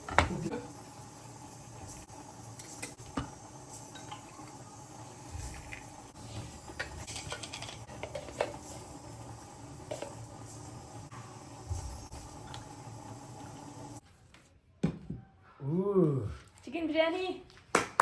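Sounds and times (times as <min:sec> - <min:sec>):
dishes and cutlery clinking: 0:06.8 - 0:08.6.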